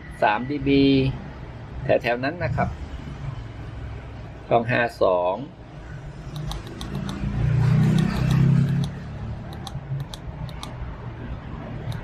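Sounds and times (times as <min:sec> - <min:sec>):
small buttons clicking: 0:07.9 - 0:10.8.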